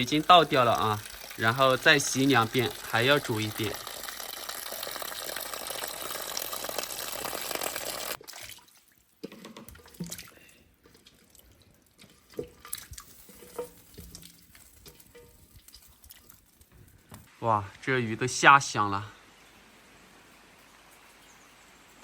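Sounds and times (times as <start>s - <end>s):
tap water running into basin: 0.0s - 16.7s.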